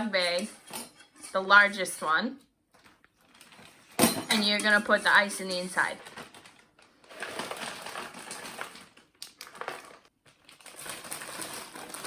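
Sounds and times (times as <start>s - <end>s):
plastic bag crinkling: 5.9s - 12.0s
ice cubes clattering: 7.1s - 12.0s.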